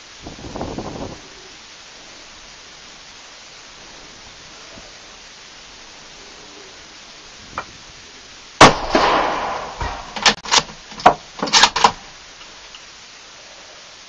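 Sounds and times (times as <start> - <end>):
rifle shot with echo: 8.6 - 10.4
sharp knocks and clatter: 8.9 - 12.0.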